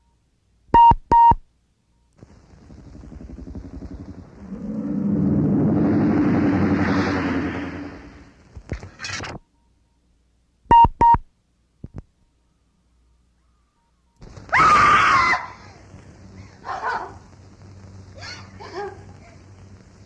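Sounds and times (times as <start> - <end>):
high pitched scream: 4.4 - 8.4, 14.5 - 15.7.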